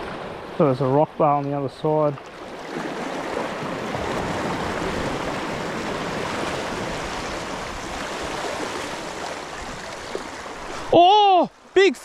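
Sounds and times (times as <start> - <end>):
sea water washing around rocks: 2.3 - 11.0.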